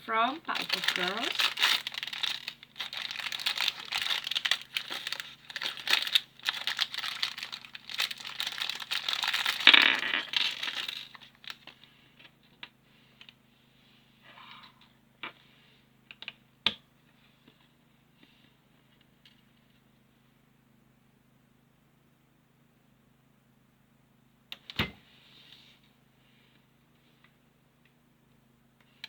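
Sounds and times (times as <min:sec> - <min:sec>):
plastic packaging crinkling: 0:00.1 - 0:11.8.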